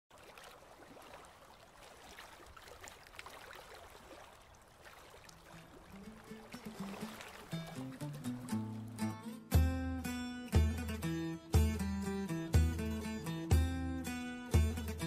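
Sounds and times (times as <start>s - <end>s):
water trickling and lapping: 0.1s - 9.6s
background music: 6.5s - 15.0s.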